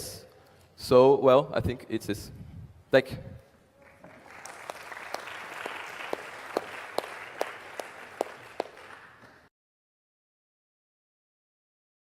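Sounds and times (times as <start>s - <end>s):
audience applause: 3.8s - 9.5s
individual sharp claps: 3.8s - 9.5s.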